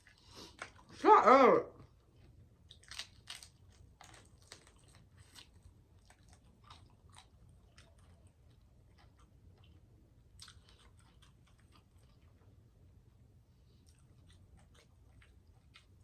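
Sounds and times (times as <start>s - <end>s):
chewing and crunching: 0.0s - 1.0s, 1.8s - 16.0s.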